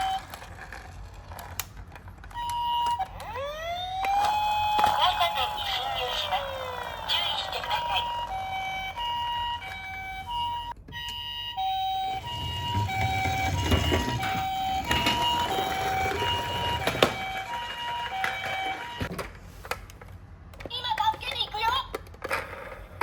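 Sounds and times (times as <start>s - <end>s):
two-tone toy ambulance siren: 0.0s - 0.7s, 2.2s - 19.1s
toy wheels rolling on cardboard: 0.0s - 10.3s, 11.7s - 19.1s.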